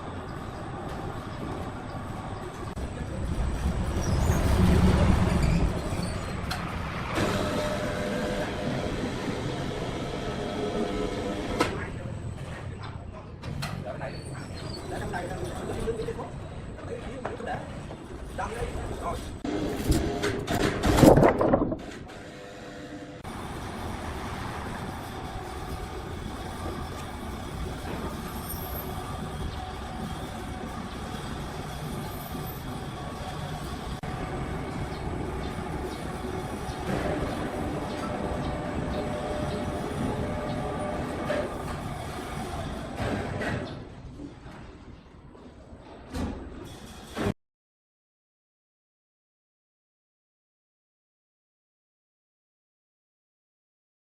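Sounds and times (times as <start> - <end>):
sawmill machinery rumbling: 0.0 - 12.6, 22.0 - 43.9
sawmill machinery humming: 6.5 - 11.8.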